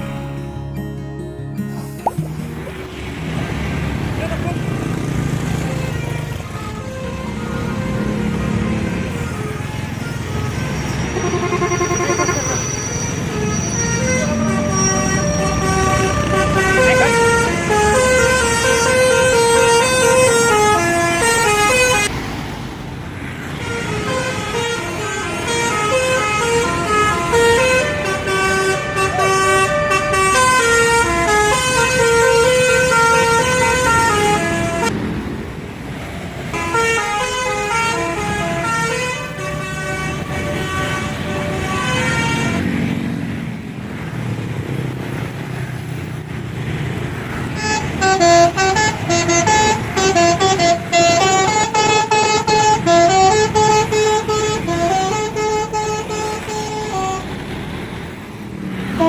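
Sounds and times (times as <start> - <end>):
multi-tone musical bus horn: 4.5 - 22.2, 23.4 - 35.0, 36.4 - 43.0, 47.3 - 57.7, 58.8 - 59.0.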